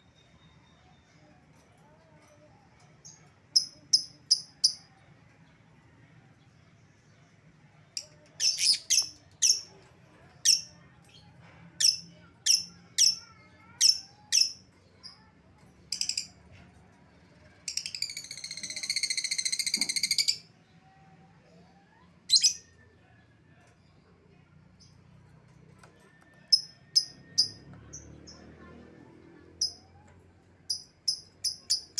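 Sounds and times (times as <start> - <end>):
lovebird chirping and chattering: 3.0 - 4.9, 8.0 - 9.7, 10.4 - 13.2, 13.8 - 15.3, 17.7 - 20.5, 22.3 - 22.7, 30.7 - 31.9.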